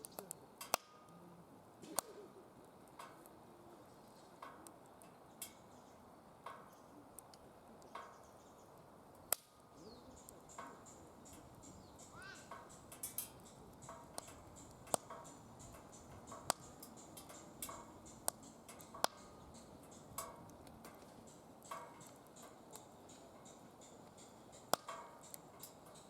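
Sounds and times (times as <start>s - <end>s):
faint steady hiss: 0.0s - 26.0s
fire crackling and popping: 0.0s - 26.0s.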